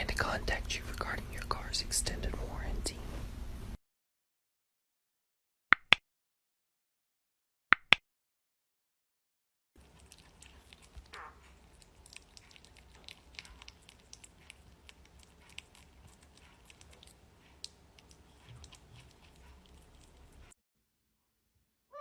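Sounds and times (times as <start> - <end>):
low steady hum: 0.0 - 3.8, 9.8 - 20.5
faint irregular crunching clicks: 9.9 - 20.5.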